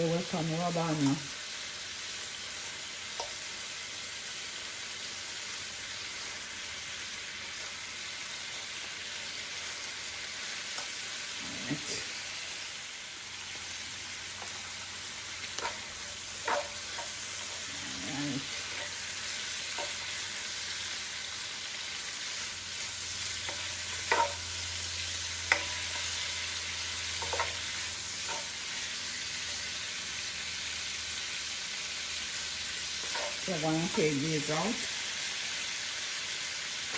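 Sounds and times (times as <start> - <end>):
shrimp sizzling in oil: 0.0 - 36.9
utensil clicking against pot: 15.5 - 17.6, 23.4 - 24.5, 25.4 - 26.2.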